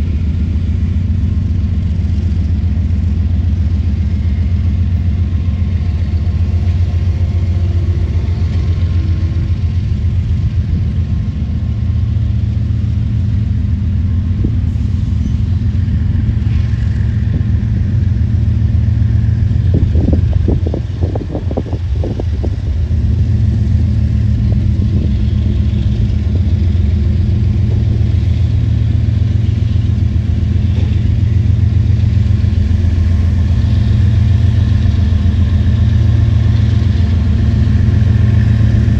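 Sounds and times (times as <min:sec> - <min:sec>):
diesel locomotives rumbling: 0:00.0 - 0:38.9
train clanks: 0:00.0 - 0:38.9.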